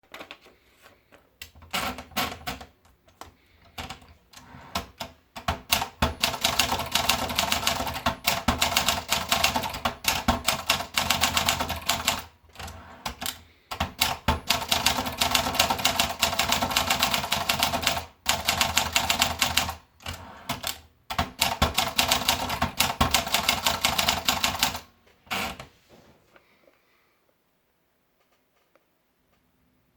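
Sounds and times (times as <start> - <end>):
typewriter keys striking rapidly: 4.8 - 25.6.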